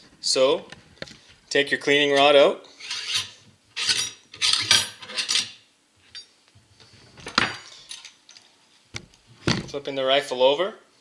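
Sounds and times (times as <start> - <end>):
metal rod scraping and clinking: 2.8 - 6.3.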